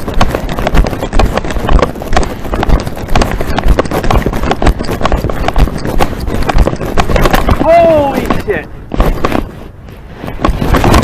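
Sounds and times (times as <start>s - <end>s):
heavy thumps and knocks: 0.0s - 9.6s, 10.2s - 11.0s.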